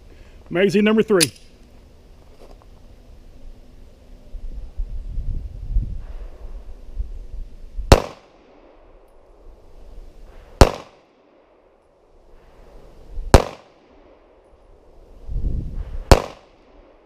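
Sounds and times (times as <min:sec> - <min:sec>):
pistol shots with echo: 0:07.9 - 0:08.6, 0:10.6 - 0:11.0, 0:13.3 - 0:13.8, 0:16.1 - 0:16.5.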